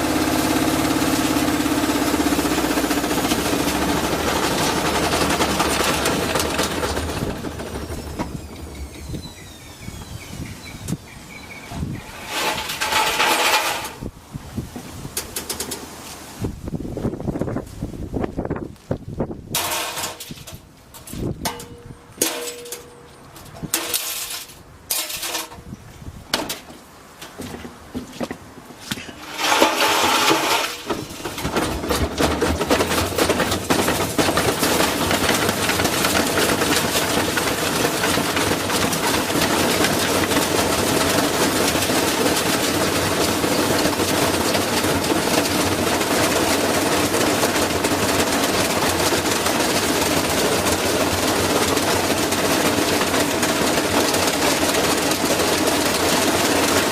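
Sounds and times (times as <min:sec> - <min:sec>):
rattling of shaking machine: 0:00.0 - 0:11.0, 0:11.7 - 0:14.1, 0:29.1 - 0:56.9
washing machine spinning: 0:00.0 - 0:11.0, 0:29.2 - 0:56.9.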